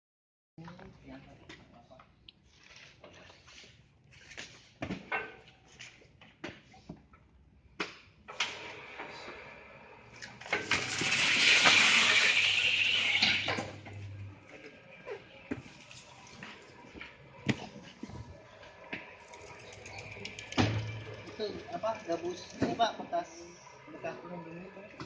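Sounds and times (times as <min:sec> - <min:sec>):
machine motor hum: 0:10.6 - 0:25.0.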